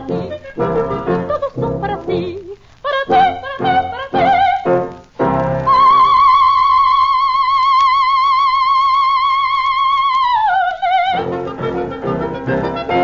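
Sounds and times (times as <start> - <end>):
woman singing a long high note: 5.7 - 13.0.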